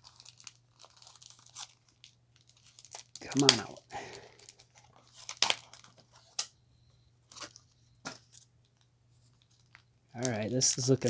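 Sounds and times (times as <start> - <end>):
packaging tearing and crinkling: 0.0 - 6.5, 9.5 - 11.0.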